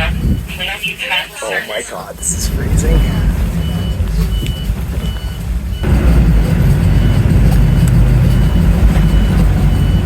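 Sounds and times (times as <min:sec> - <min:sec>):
bus engine rumble: 0:00.0 - 0:10.0
road noise: 0:00.0 - 0:10.0
short high beeps: 0:02.2 - 0:03.8.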